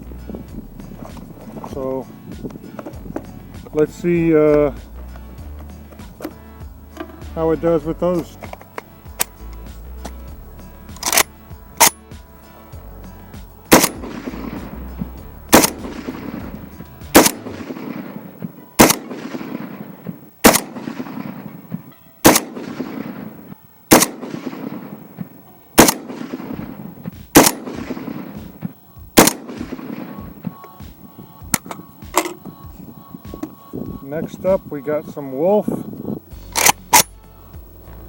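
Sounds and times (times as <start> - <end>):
rifle shots with echo: 10.9 - 12.2, 13.7 - 32.4, 36.6 - 37.1.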